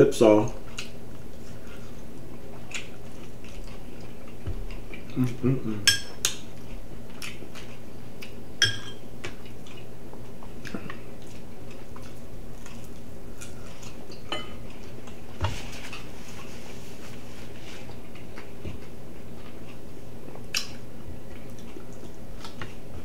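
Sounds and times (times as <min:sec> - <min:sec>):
steady low hum: 0:00.0 - 0:23.0
tableware clinking: 0:05.9 - 0:06.2, 0:08.6 - 0:09.0, 0:14.3 - 0:14.6.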